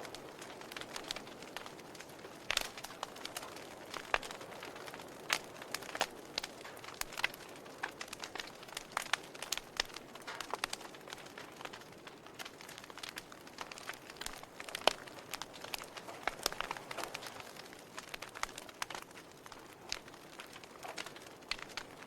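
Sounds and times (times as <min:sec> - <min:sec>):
fire crackling and popping: 0:00.0 - 0:22.0
soft fire hiss: 0:00.0 - 0:22.0.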